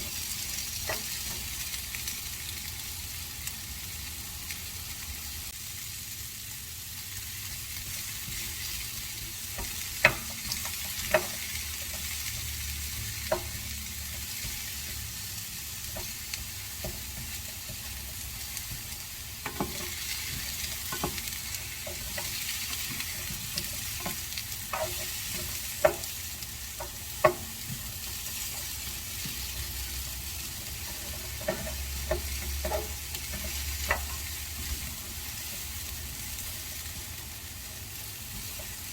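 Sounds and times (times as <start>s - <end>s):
food sizzling in a frying pan: 0.0s - 38.9s
utensil clacking against pan: 9.4s - 35.9s.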